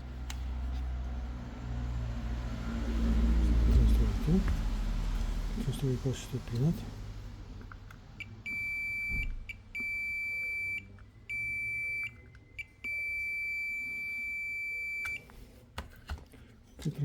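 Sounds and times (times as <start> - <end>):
multimeter continuity beeps: 8.2 - 15.2.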